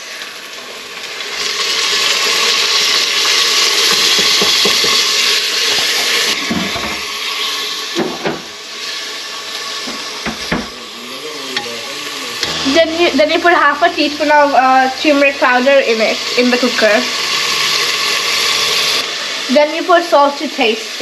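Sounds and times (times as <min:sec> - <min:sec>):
tomatoes sizzling in hot oil: 0:00.0 - 0:21.0
spoon knocking against pot: 0:03.9 - 0:05.0.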